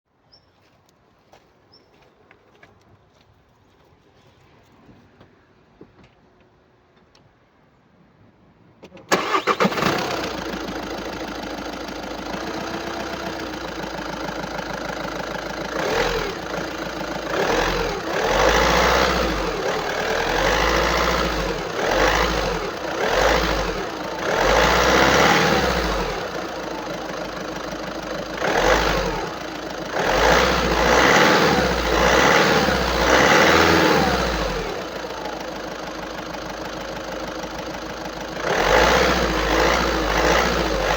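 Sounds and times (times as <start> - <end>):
diesel engine cranking and starting: 8.8 - 40.9
engine idling and revving: 9.1 - 40.9.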